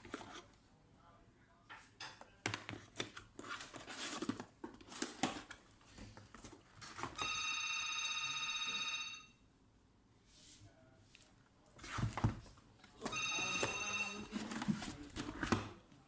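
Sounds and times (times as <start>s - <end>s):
steady electronic ringing tone: 7.2s - 9.4s, 13.1s - 14.3s.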